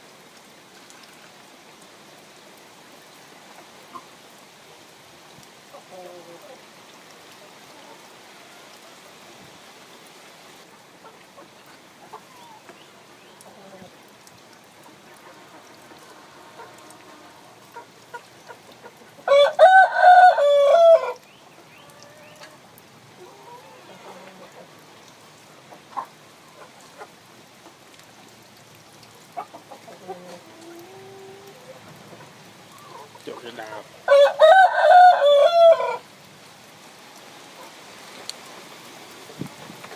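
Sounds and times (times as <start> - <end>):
faint chickens clucking: 5.7 - 6.7, 11.0 - 14.0, 20.4 - 22.6, 23.2 - 24.8, 25.7 - 27.8, 29.3 - 33.9
rooster crowing: 19.3 - 21.2, 34.1 - 36.0.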